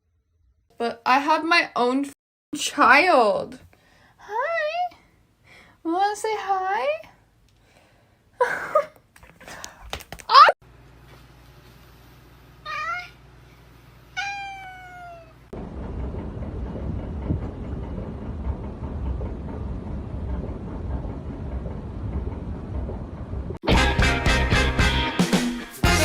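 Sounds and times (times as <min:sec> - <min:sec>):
cat meowing: 0:12.6 - 0:13.2, 0:14.2 - 0:15.4.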